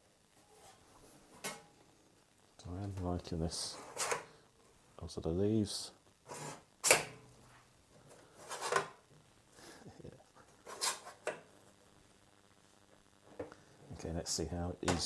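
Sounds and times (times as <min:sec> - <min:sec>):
rubbing and scraping handling: 0:02.8 - 0:04.3, 0:06.3 - 0:09.0, 0:10.4 - 0:11.4.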